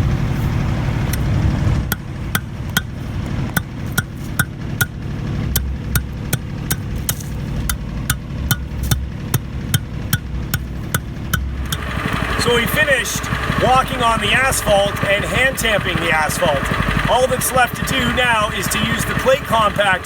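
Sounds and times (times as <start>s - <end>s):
plate tamper thudding on asphalt: 1.1s - 14.1s.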